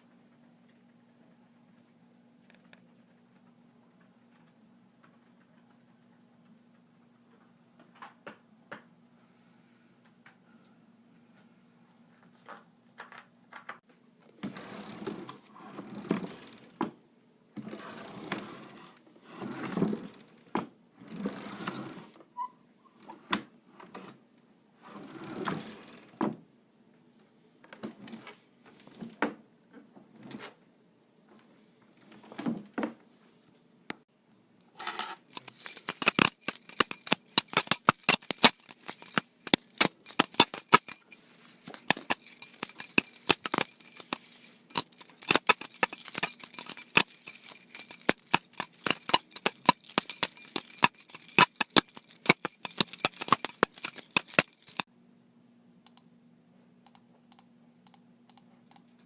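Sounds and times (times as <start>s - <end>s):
small metal objects jingling: 34.9s - 54.9s.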